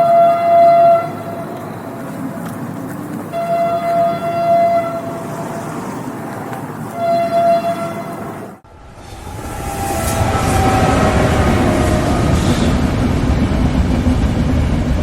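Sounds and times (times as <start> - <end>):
train horn blasts: 0.0 - 1.5, 3.3 - 5.2, 6.9 - 13.0
train running noise: 0.0 - 15.0.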